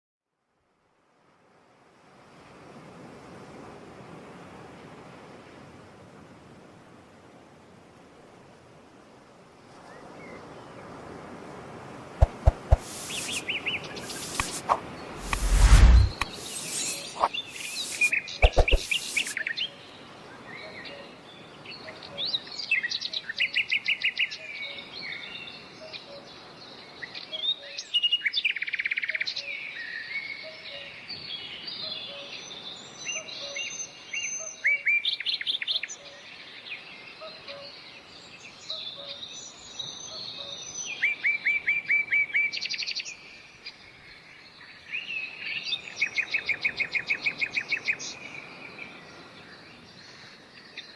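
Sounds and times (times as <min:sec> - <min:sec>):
steady background hiss: 0:12.2 - 0:15.2, 0:15.8 - 0:20.0
birds trilling and chirping: 0:16.3 - 0:19.4.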